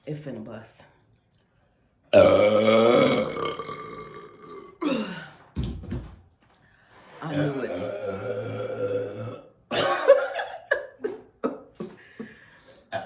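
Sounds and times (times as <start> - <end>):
person burping: 2.1 - 5.3, 7.3 - 10.5.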